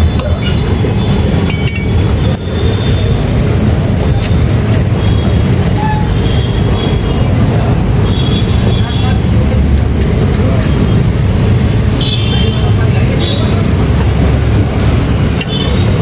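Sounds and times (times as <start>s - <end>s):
low engine rumble: 0.0s - 16.0s.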